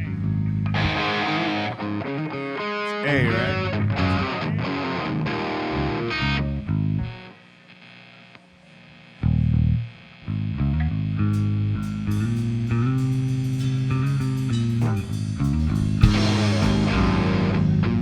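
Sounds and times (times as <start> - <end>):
bass guitar notes: 0.0 - 2.1, 3.0 - 7.2, 9.2 - 18.0
electric guitar picked notes: 0.0 - 7.4, 11.1 - 18.0.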